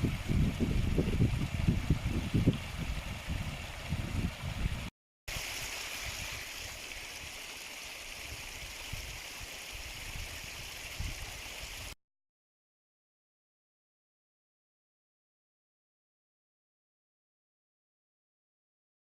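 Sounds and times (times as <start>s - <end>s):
stream rushing: 0.0s - 12.0s.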